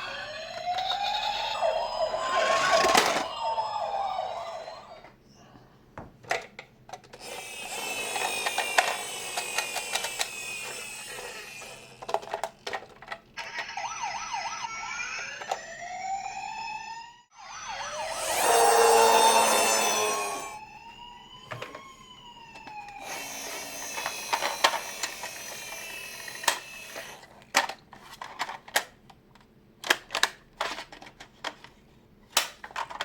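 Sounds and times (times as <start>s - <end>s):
toy electronic siren wailing: 0.0s - 5.0s, 7.2s - 12.0s, 13.4s - 27.2s.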